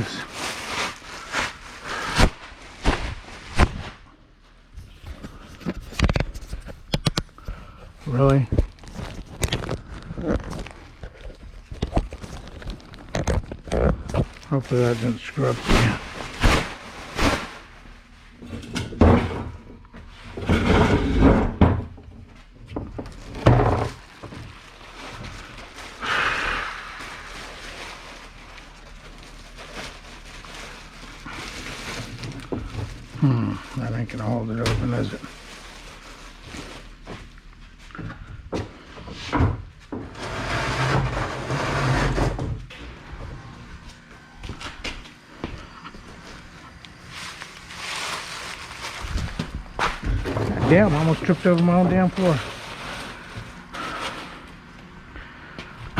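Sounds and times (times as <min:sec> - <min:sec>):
packaging rustling: 0:00.0 - 0:04.0, 0:08.1 - 0:18.0, 0:23.0 - 0:37.3, 0:45.9 - 0:54.7
scraping and rustling: 0:00.0 - 0:04.0, 0:39.0 - 0:54.7.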